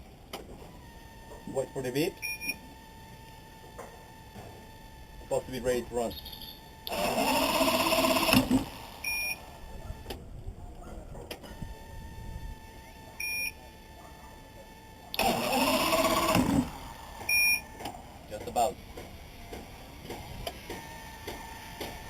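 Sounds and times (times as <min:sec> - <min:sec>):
short high beeps: 0:02.2 - 0:02.6, 0:06.1 - 0:06.8, 0:09.0 - 0:09.4, 0:13.2 - 0:13.6, 0:17.3 - 0:17.7
outboard engine starter cranking: 0:06.2 - 0:09.4, 0:15.1 - 0:18.0.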